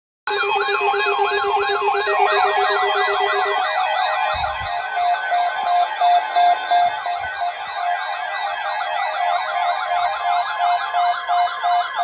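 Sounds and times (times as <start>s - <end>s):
repeating electronic beep: 0.3s - 7.6s
wailing and yelping sirens: 0.3s - 12.0s.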